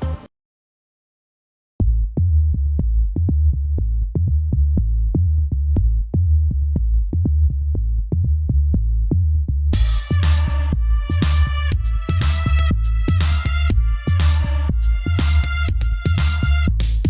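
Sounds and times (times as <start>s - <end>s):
pulsing bass line: 1.8s - 17.0s
drum machine beat: 9.8s - 17.0s.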